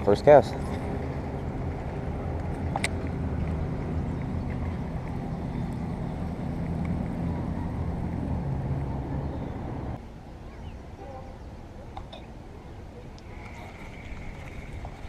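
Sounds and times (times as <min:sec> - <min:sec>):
engine rumble: 0:00.0 - 0:10.6.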